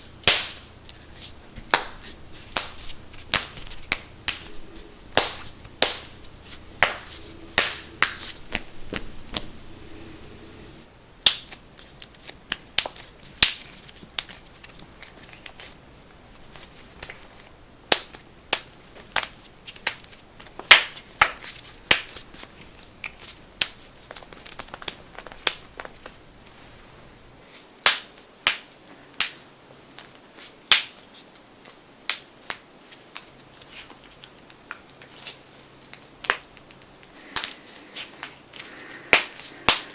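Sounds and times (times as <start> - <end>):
knuckles cracking: 0.3 - 9.5, 11.3 - 15.8, 16.4 - 26.2, 38.2 - 39.9.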